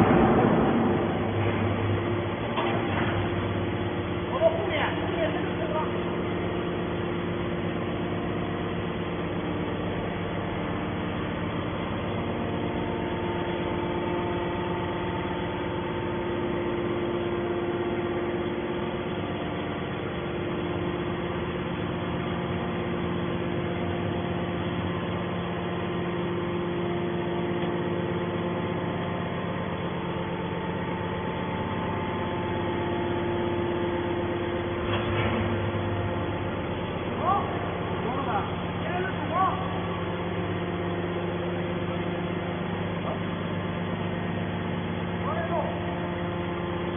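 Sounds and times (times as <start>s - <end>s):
hydraulic power unit humming: 0.0s - 46.9s.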